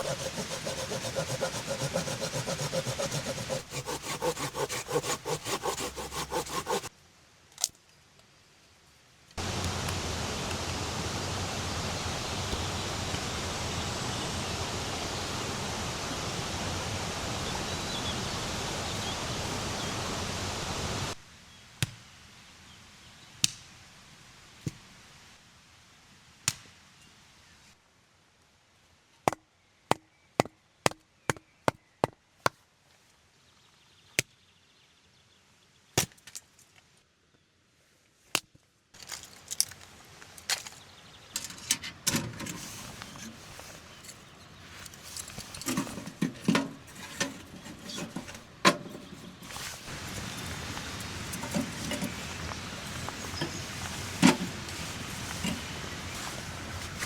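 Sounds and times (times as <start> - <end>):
rushing water: 0.0 - 6.9, 49.4 - 57.0.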